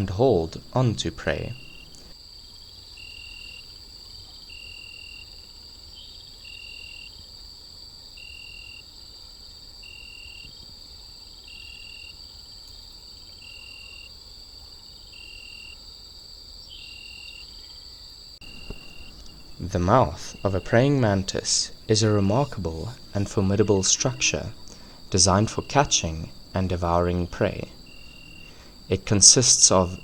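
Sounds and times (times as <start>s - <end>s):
high-pitched insect trilling chorus: 0.0s - 2.2s, 16.6s - 30.0s
lower insect chirping call: 0.0s - 7.4s, 8.2s - 9.0s, 14.8s - 15.8s, 16.6s - 30.0s.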